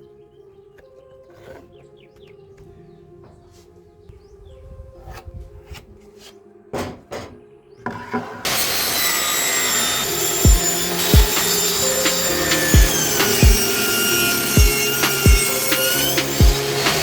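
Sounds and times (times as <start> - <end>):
saw rasping through wood: 7.9 - 17.0.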